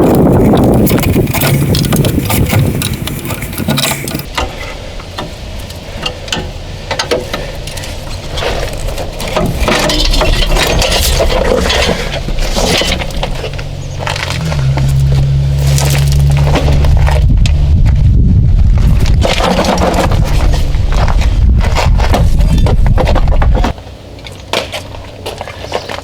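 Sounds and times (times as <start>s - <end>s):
steady low hum: 0.0s - 24.1s
metal tools clinking: 0.8s - 4.3s.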